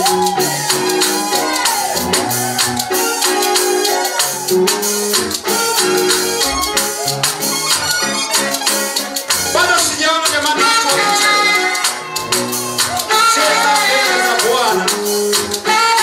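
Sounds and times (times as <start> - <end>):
bass line: 0.0 - 8.5
keyboard chords: 0.0 - 16.0
percussion beat: 0.0 - 16.0.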